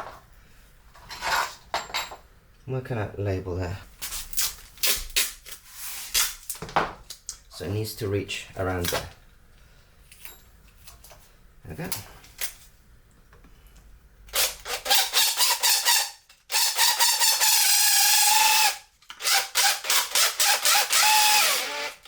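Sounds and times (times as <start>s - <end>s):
power drill motor whining: 14.4s - 22.0s.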